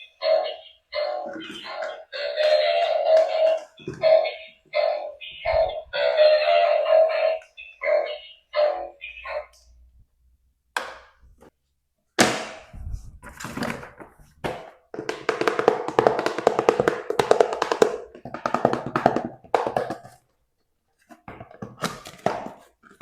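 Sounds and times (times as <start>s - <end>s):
plastic toy taps and knocks: 14.4s - 20.2s.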